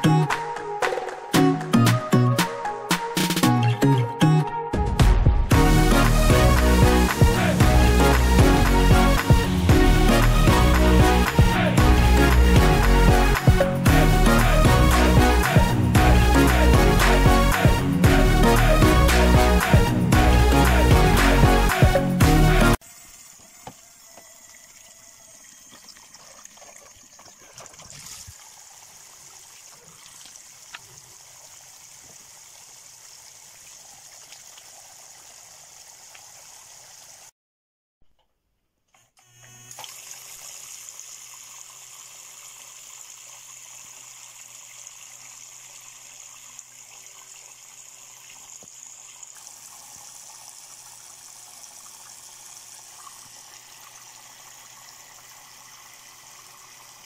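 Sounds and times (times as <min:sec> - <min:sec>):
water trickling down waterfall: 0:22.8 - 0:37.3, 0:39.8 - 0:57.0
water pump humming: 0:39.2 - 0:57.0.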